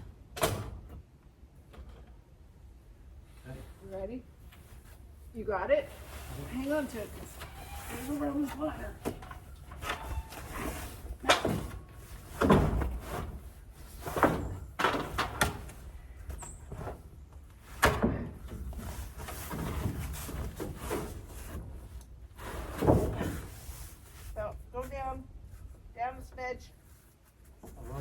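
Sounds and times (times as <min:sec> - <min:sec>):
wooden knocks and thuds: 0:08.6 - 0:21.9.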